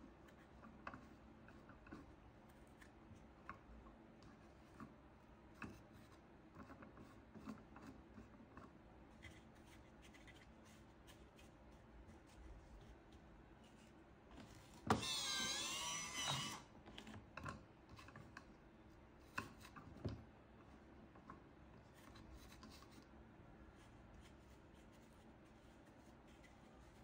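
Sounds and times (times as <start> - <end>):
motor whining: 14.9 - 16.7.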